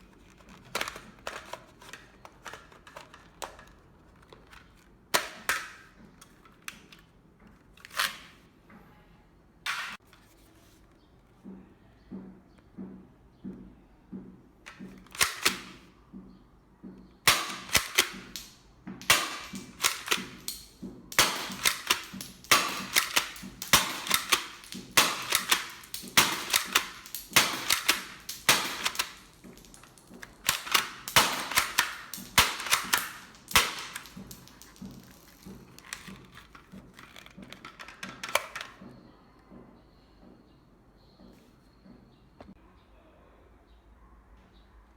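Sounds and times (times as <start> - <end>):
toy shotgun clacking and firing: 0.2 - 7.0, 14.7 - 15.8, 17.3 - 38.8.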